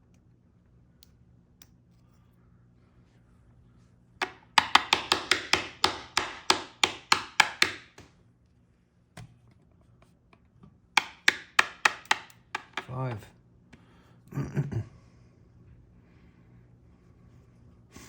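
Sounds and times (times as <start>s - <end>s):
sharp taps on small metal parts: 4.2s - 8.1s, 11.0s - 13.0s.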